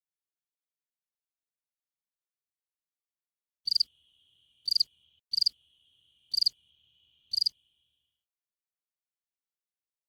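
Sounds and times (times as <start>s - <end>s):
cricket chirping: 3.7s - 8.2s.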